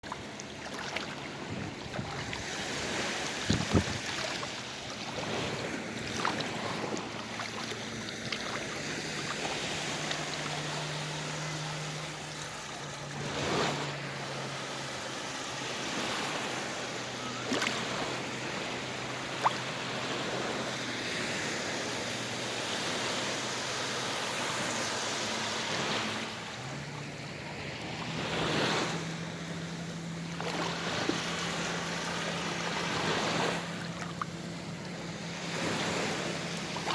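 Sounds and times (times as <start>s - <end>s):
sea waves washing onto shore: 0.0s - 36.9s.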